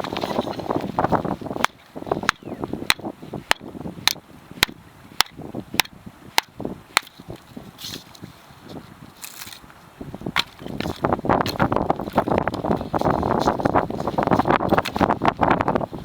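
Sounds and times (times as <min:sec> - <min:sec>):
hatchet chopping firewood: 0:01.5 - 0:07.4, 0:10.4 - 0:12.8.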